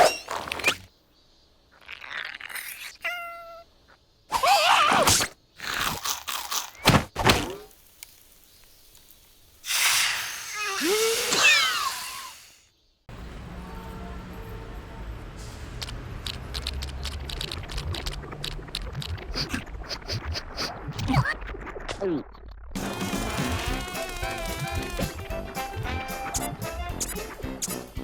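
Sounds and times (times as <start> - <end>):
cartoon characters squeaking gibberish: 4.3 - 5.3, 10.3 - 12.4
cartoon thuds and crunches: 4.8 - 7.8.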